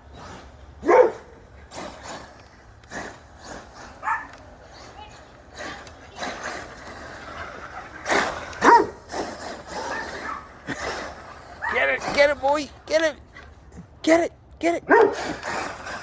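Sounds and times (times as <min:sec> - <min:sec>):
dog barking excitedly: 0:00.8 - 0:01.4, 0:04.0 - 0:05.1, 0:07.5 - 0:10.6, 0:11.2 - 0:12.3, 0:14.8 - 0:15.5.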